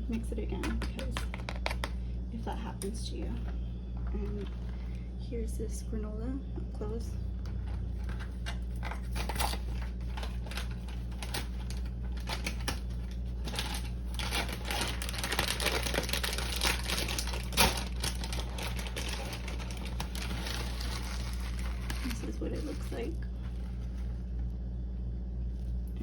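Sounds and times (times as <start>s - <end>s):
low hum: 0.0s - 26.0s
plastic package crinkling: 0.5s - 2.0s, 7.7s - 24.5s.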